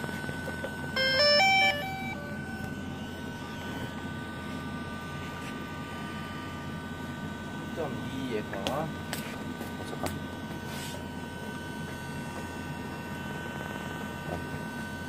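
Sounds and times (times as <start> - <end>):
gimbal motors whining: 0.0 - 6.7
electronic tune of beeps: 1.0 - 3.0.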